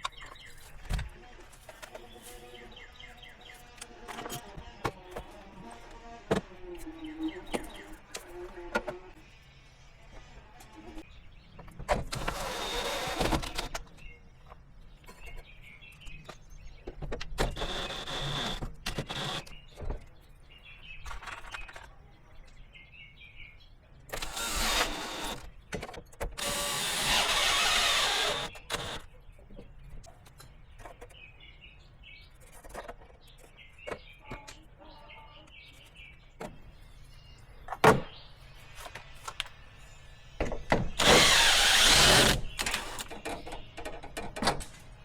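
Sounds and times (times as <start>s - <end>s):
birds chirping faintly: 0.0s - 45.0s
power drill driving screws into wood: 12.1s - 13.8s, 17.4s - 19.6s, 24.1s - 25.5s, 26.3s - 29.1s, 41.0s - 43.3s.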